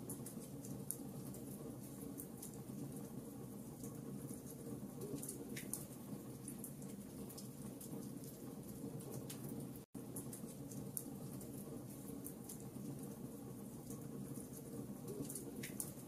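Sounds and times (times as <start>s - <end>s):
fire crackling and popping: 0.0s - 16.0s.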